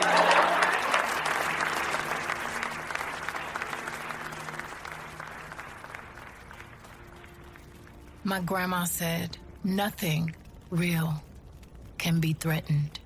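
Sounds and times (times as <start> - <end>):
audience applauding: 0.0 - 8.1.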